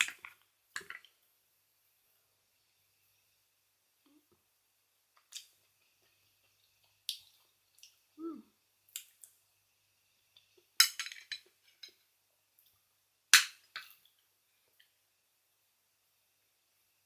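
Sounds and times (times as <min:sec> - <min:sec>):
person humming: 0:08.2 - 0:08.5.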